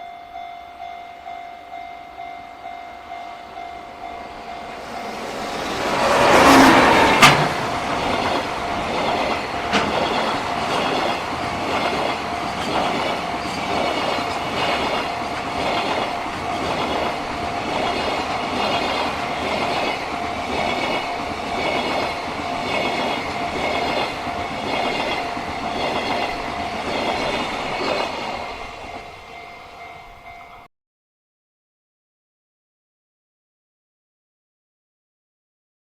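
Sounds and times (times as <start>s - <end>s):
crossing bell ringing: 0.0s - 30.7s
train wheels clicking over rail joints: 4.8s - 29.2s.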